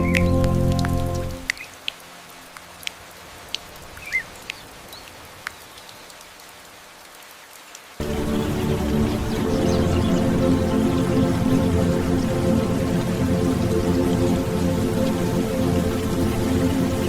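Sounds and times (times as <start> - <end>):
music: 0.0 - 2.2, 8.0 - 17.0.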